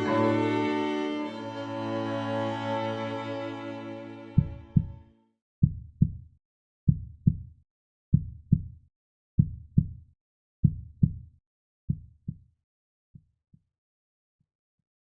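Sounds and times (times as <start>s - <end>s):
heartbeat thumps: 4.3s - 5.0s, 5.6s - 6.2s, 6.9s - 7.4s, 8.1s - 8.7s, 9.4s - 10.0s, 10.6s - 11.2s.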